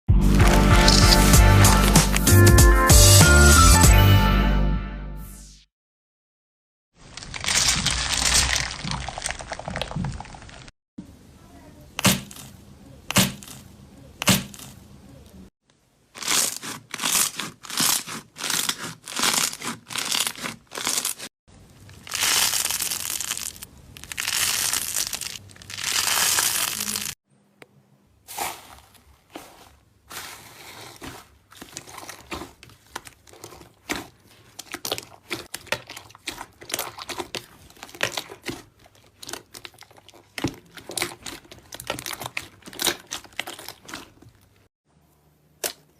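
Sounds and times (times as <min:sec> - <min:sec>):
slime crinkling and crackling: 0:00.3 - 0:02.3, 0:07.0 - 0:10.7, 0:16.1 - 0:27.2, 0:28.3 - 0:44.7.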